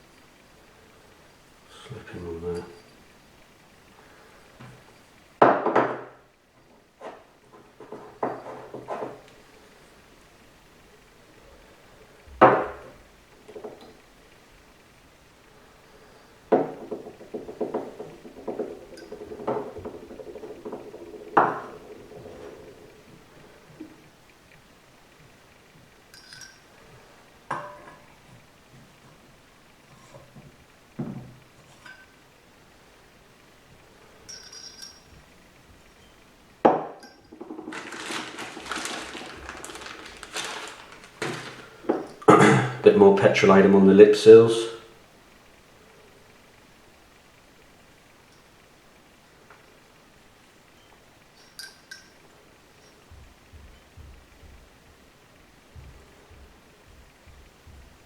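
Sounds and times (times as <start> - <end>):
metal parts rustling and scraping: 16.6 - 24.8, 34.2 - 35.2, 37.0 - 42.3
metal parts clinking: 26.1 - 26.7, 34.3 - 35.1
metal clank: 27.5 - 28.2.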